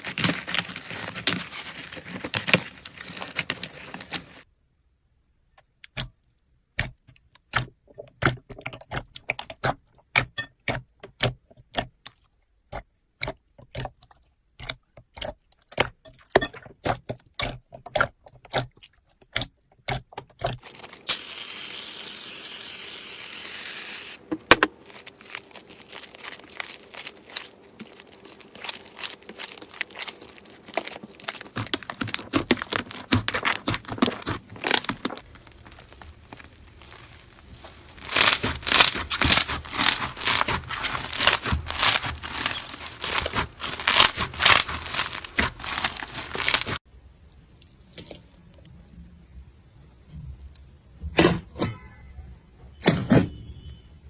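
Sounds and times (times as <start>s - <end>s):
crunchy slime crackling: 0.0s - 4.5s, 23.1s - 46.8s.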